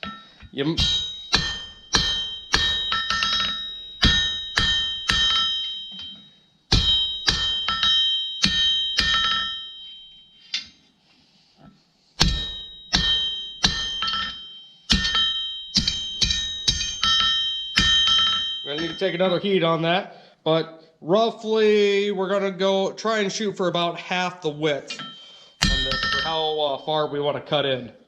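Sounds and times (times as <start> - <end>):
anvil ringing: 0.0 - 10.8, 12.2 - 19.8, 24.8 - 27.2
hammer striking steel on anvil: 0.0 - 10.8, 12.2 - 19.5, 24.9 - 26.8.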